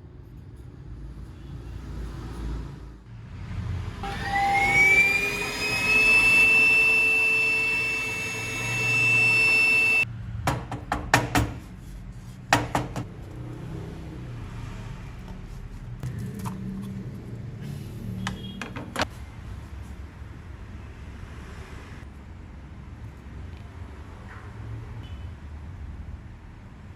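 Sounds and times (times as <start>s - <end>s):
small electric motor whining: 4.0s - 10.0s.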